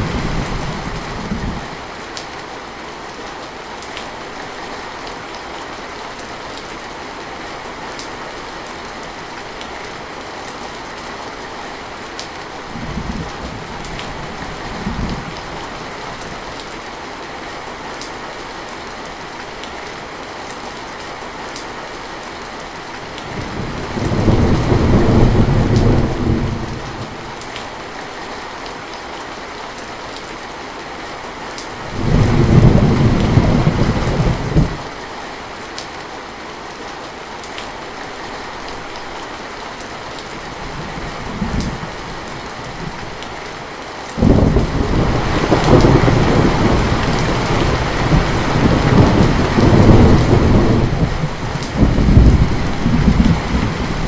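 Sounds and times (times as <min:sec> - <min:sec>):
thunder rumbling: 0:00.0 - 0:01.8, 0:23.4 - 0:27.2, 0:31.9 - 0:34.9, 0:44.2 - 0:54.0
heavy rain: 0:00.0 - 0:54.0.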